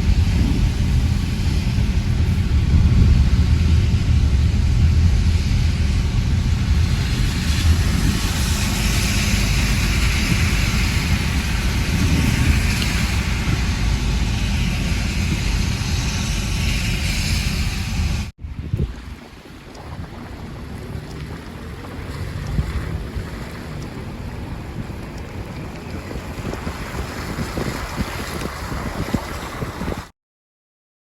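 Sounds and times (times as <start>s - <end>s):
rain hissing: 0.0s - 18.3s
wind buffeting microphone: 0.0s - 30.1s.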